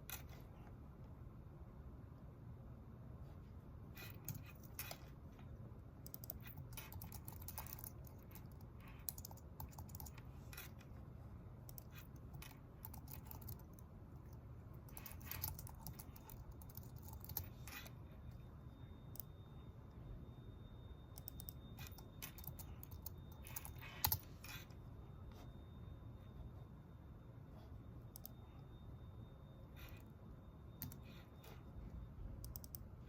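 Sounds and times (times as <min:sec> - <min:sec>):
low room hum: 0:00.0 - 0:33.0
computer keyboard typing: 0:04.0 - 0:05.2, 0:06.0 - 0:10.9, 0:11.6 - 0:18.0, 0:21.1 - 0:24.8, 0:30.8 - 0:31.6, 0:32.4 - 0:33.0.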